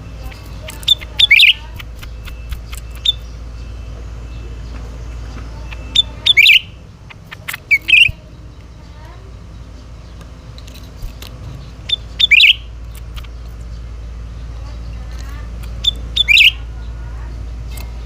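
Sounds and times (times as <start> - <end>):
bird call phrase: 0.0 - 9.3, 11.9 - 12.7, 15.8 - 17.1
steady low hum: 0.0 - 18.0.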